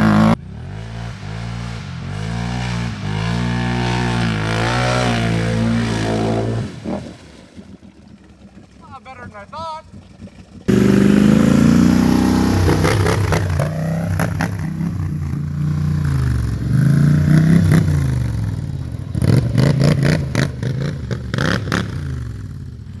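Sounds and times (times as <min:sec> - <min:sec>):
engine revving: 0:00.0 - 0:23.0
sharp exhaust cracks: 0:08.5 - 0:23.0.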